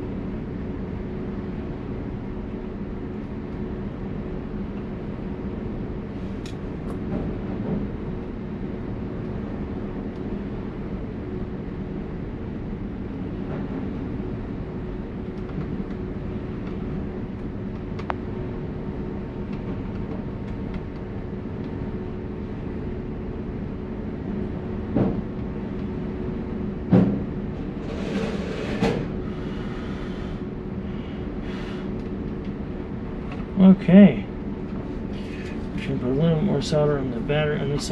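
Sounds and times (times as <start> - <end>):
low two-tone machine hum: 0.0 - 37.9.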